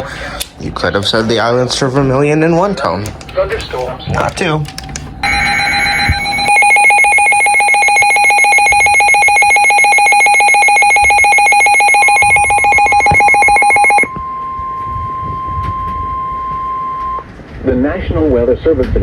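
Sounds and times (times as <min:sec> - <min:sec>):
fast-pulsing electronic buzzer trill: 0:05.2 - 0:14.1
steady alert tone: 0:05.2 - 0:14.1.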